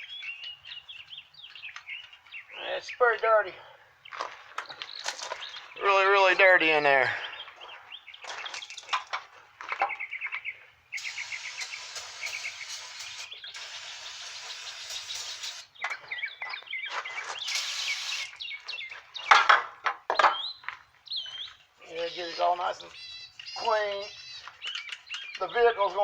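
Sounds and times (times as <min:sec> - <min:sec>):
birds chirping: 0:00.0 - 0:26.0
aerosol spray hissing: 0:11.0 - 0:15.7, 0:17.4 - 0:18.3.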